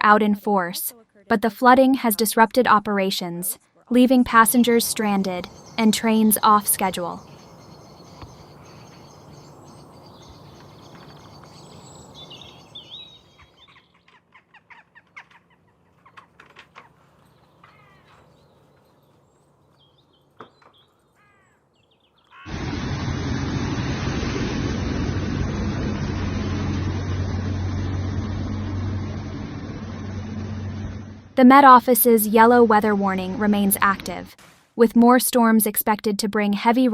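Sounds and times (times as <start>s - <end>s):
faint bird chirps: 5.4s - 22.5s
loud steady rushing noise: 22.5s - 31.4s
low hum: 22.5s - 34.3s.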